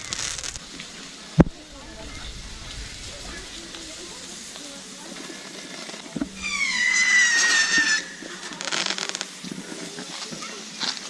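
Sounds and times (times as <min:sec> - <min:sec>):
firework crackling: 0:00.0 - 0:11.0
firework pop: 0:05.3 - 0:09.7
descending firework whistle: 0:06.2 - 0:09.4.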